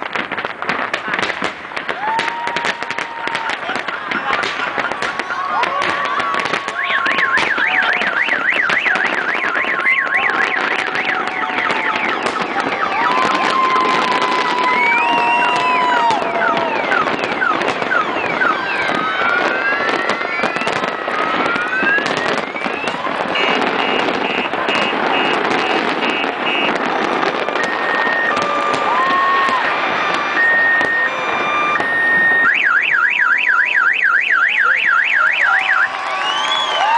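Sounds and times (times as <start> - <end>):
crowd noise: 0.0 - 36.9
fireworks crackling: 0.0 - 36.9
warbling siren: 5.4 - 36.2
car alarm sounding: 6.6 - 36.0.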